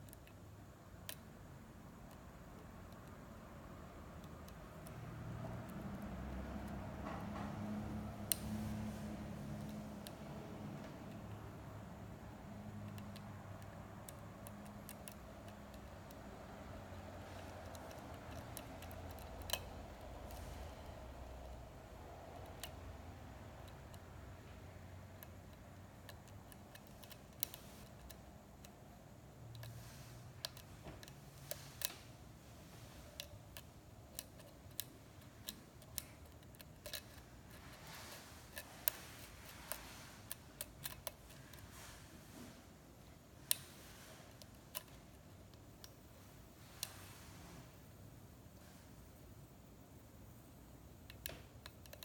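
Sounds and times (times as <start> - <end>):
lock pick clicking in lock: 25.2 - 28.8, 33.2 - 41.7.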